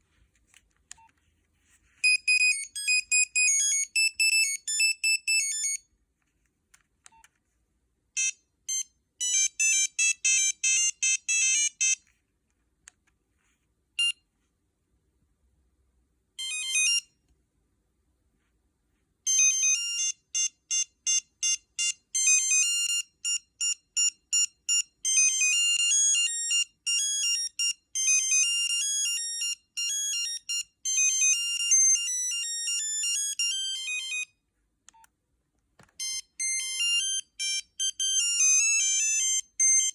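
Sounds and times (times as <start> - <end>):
beeping phone ringtone melodies: 2.0 - 5.9, 16.4 - 17.1, 19.3 - 34.3, 36.0 - 39.9.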